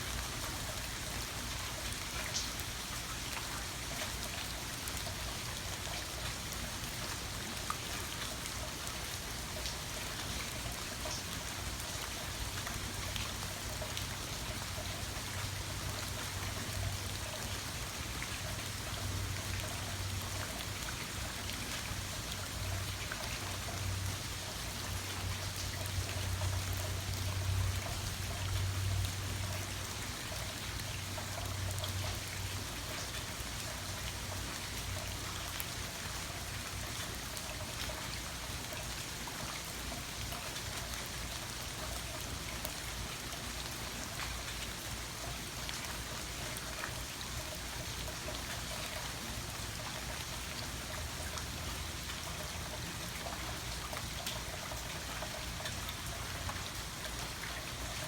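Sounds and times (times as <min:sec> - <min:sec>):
steady rain falling: 0:00.0 - 0:58.0
ticks of single raindrops: 0:01.7 - 0:15.3.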